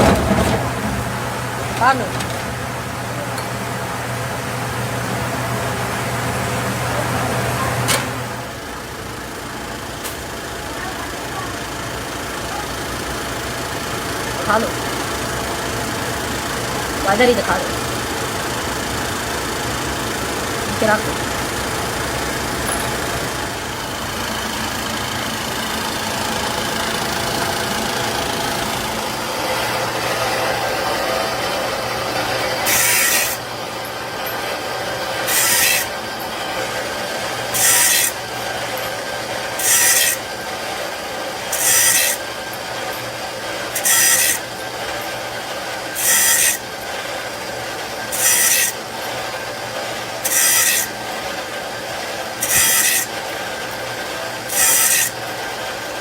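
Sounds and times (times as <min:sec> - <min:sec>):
workshop machinery running: 0:00.0 - 0:56.0
short rasping machine hiss: 0:52.4 - 0:53.1.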